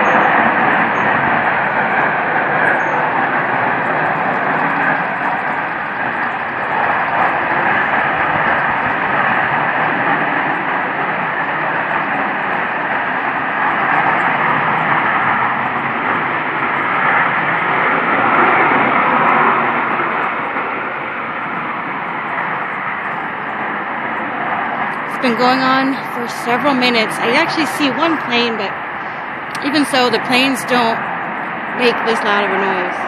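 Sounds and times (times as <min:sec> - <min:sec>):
roar from the sky: 0:00.0 - 0:25.1.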